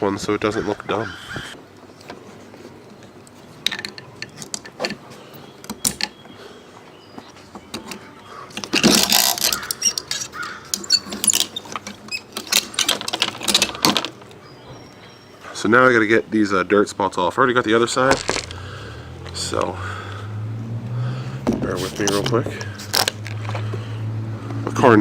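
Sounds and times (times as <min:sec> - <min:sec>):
plastic and metal clicks and rattles: 0:07.7 - 0:14.3.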